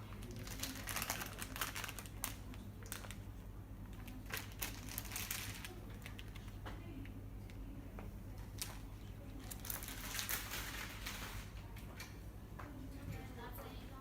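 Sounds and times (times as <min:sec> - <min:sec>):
bag crinkling: 0:00.0 - 0:03.2, 0:04.0 - 0:06.6, 0:09.4 - 0:11.5
low steady hum: 0:00.0 - 0:14.0.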